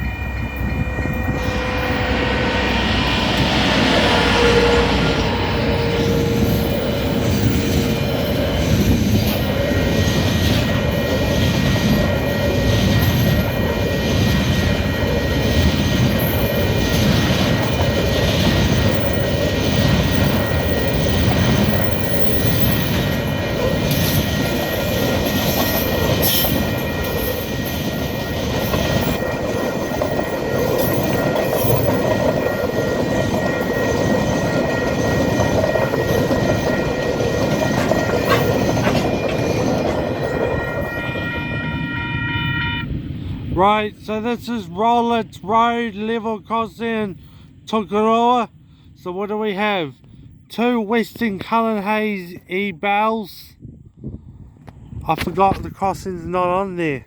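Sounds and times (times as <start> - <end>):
diesel train engine rumble: 0.0 - 52.6
train wheel knocks: 34.1 - 40.8.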